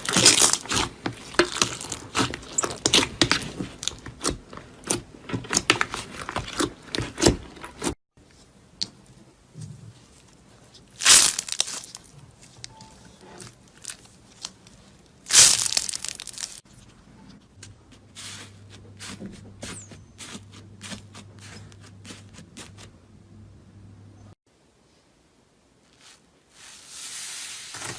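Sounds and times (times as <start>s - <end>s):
slime tearing: 0.0s - 7.9s, 11.0s - 12.1s, 15.3s - 16.6s.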